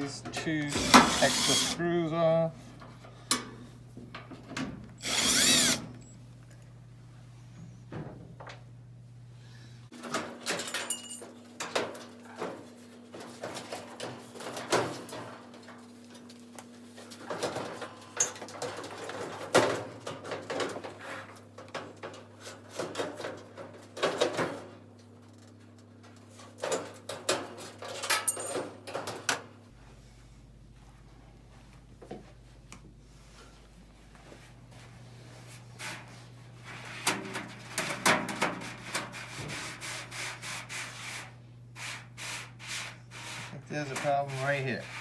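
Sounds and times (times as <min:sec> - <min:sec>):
steady low hum: 0:29.7 - 0:37.8
knocks and scrapes on sheet metal: 0:36.7 - 0:45.0.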